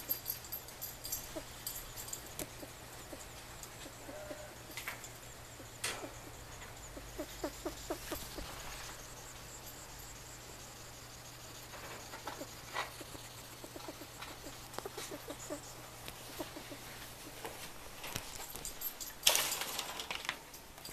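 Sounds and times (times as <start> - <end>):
rat wheezing with squeaky chirps: 1.1 - 10.1, 12.0 - 17.4.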